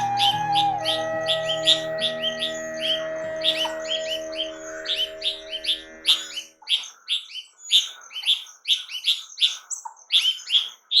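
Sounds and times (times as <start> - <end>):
background music chord: 0.0 - 6.6
small birds chirping: 0.0 - 11.0.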